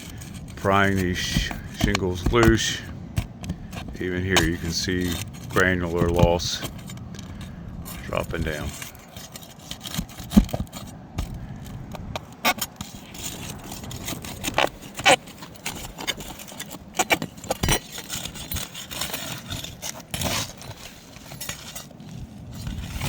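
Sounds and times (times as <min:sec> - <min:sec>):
pry bar scraping shingles: 0:00.0 - 0:23.0.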